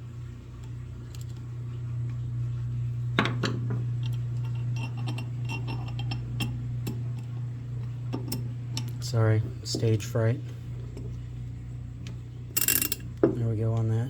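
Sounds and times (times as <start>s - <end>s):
sharp ratchet click: 12.6s - 13.0s
small metal parts clinking: 12.6s - 13.0s.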